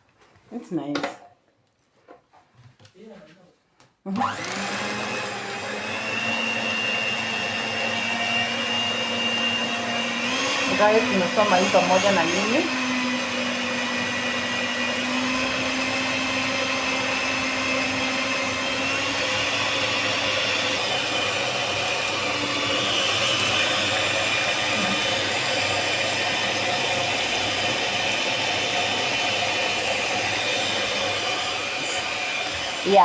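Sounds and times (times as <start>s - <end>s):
electric food mixer motor running: 4.1s - 33.0s.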